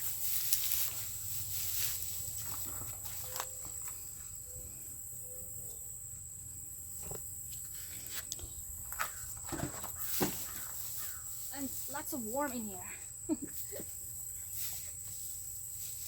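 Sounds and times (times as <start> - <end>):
rustles and light knocks: 0.0 - 4.1, 7.0 - 12.0
crickets chirring: 0.0 - 16.0.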